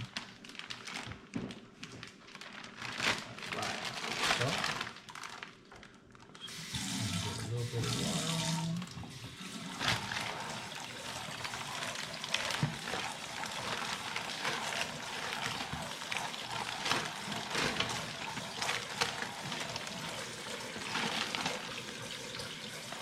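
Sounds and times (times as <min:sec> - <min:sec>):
tap water running into sink: 0:06.5 - 0:23.0.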